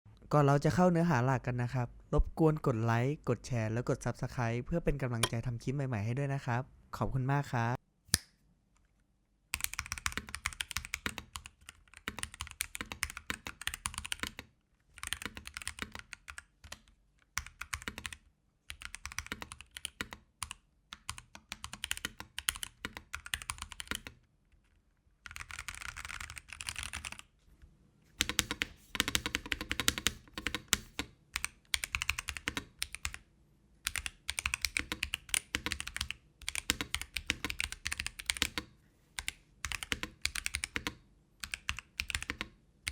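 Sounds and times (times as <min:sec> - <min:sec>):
mechanical keyboard typing: 0:09.6 - 0:16.8, 0:17.4 - 0:24.2, 0:25.2 - 0:27.3, 0:28.2 - 0:33.2, 0:33.8 - 0:42.9.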